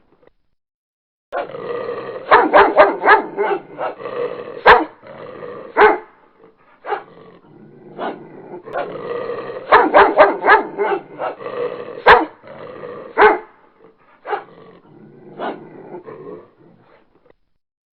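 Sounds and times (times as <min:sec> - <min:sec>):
dog barking: 0:02.3 - 0:04.0, 0:04.6 - 0:05.0, 0:05.7 - 0:06.2, 0:06.8 - 0:07.1, 0:08.0 - 0:08.9, 0:09.6 - 0:11.4, 0:12.0 - 0:12.4, 0:13.1 - 0:13.6, 0:14.2 - 0:14.5, 0:15.3 - 0:15.7.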